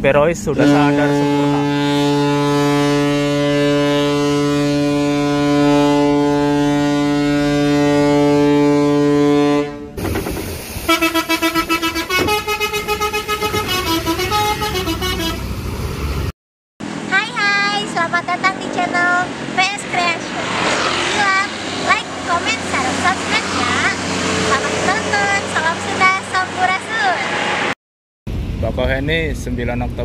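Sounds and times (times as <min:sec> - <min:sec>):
bus multi-tone musical horn: 0:00.5 - 0:10.0, 0:10.8 - 0:15.7, 0:20.1 - 0:27.3
ship's horn long blast: 0:00.5 - 0:10.0, 0:10.8 - 0:15.6.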